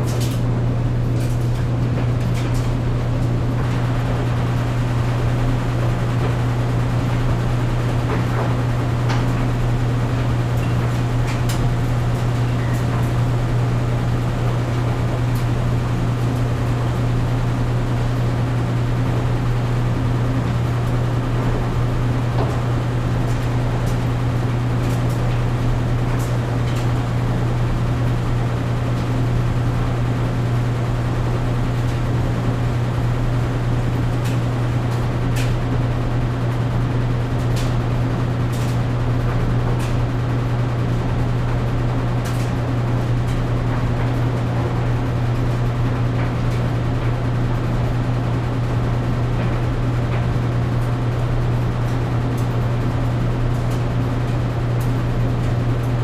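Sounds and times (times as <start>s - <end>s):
clothes dryer humming and rumbling: 0.0s - 56.0s.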